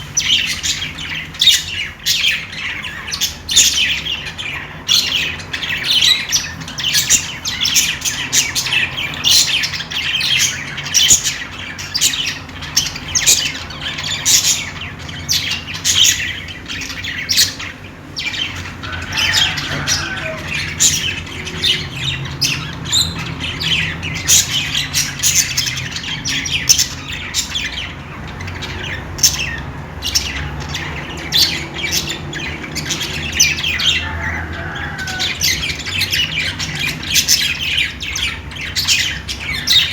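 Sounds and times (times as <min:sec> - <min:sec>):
budgerigars chirping and chattering: 0:00.0 - 0:39.9.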